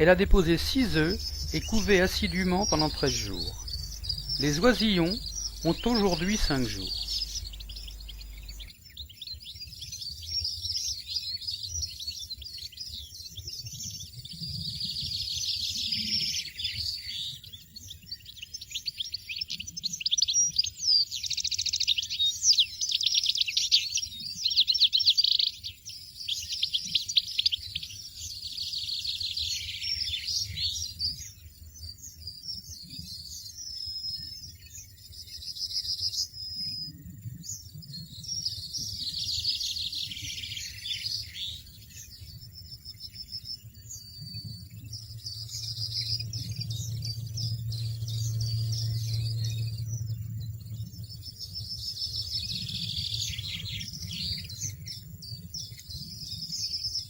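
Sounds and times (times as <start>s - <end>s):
low rumble: 0.0s - 2.8s, 3.5s - 4.6s, 44.9s - 51.3s
goldfinches twittering: 0.0s - 8.8s, 38.5s - 56.9s.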